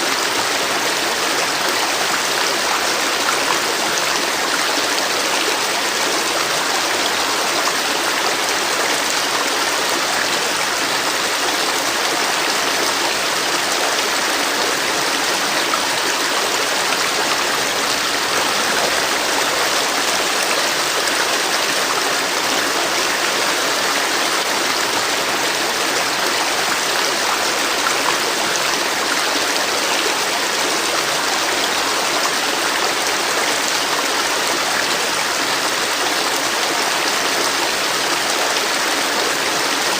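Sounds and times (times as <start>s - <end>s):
river water rushing over rocks: 0.0s - 39.9s.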